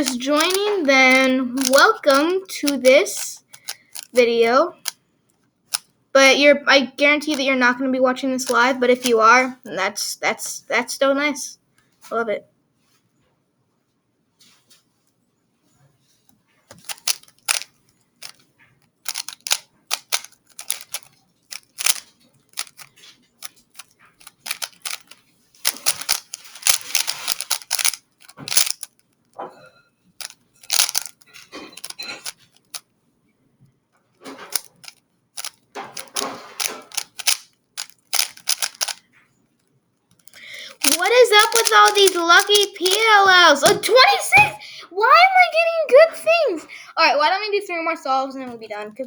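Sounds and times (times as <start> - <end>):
speedcube clicking and clacking: 0.0 - 5.0, 5.7 - 6.4, 7.1 - 7.7, 8.3 - 9.3, 16.7 - 29.0, 30.2 - 32.8, 34.4 - 39.0, 40.1 - 44.6.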